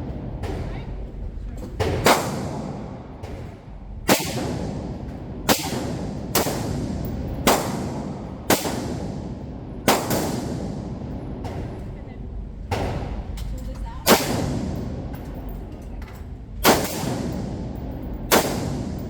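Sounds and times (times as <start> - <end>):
sharp gunshots with ringing tail: 2.0 - 3.3, 4.0 - 11.8, 14.0 - 15.1, 16.6 - 19.0.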